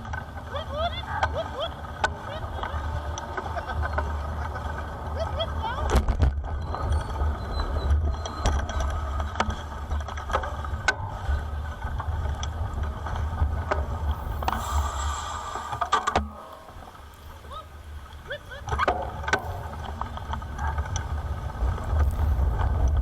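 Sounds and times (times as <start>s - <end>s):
wind rumbling on microphone: 0.0s - 23.0s
bicycle clicks and rattles: 5.8s - 14.6s, 17.0s - 23.0s.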